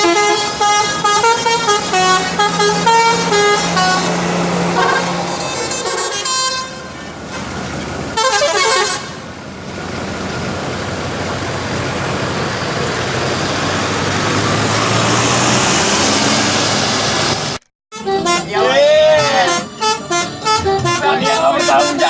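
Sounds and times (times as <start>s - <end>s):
musical multi-tone bus horn: 0.0s - 9.4s, 17.4s - 22.0s
bus engine and road noise: 0.0s - 22.0s.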